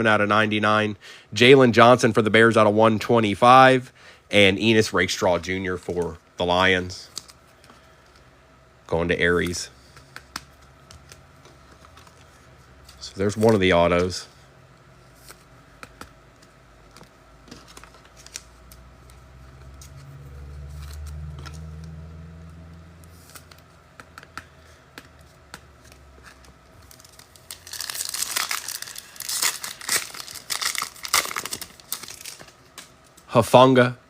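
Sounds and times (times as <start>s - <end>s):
low hum: 16.4s - 33.0s
card pack wrapper tearing: 25.8s - 32.9s.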